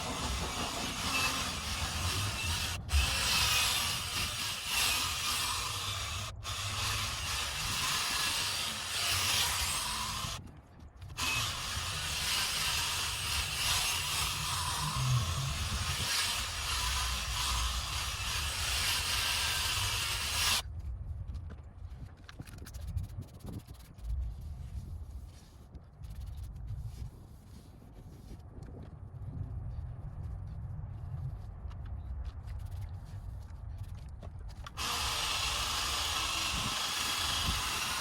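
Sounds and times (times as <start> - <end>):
sanding pad scrubbing plastic: 0.0 - 10.4.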